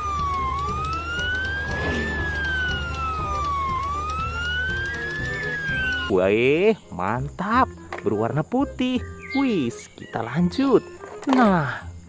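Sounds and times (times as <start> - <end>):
ambulance siren wailing: 0.0 - 6.1.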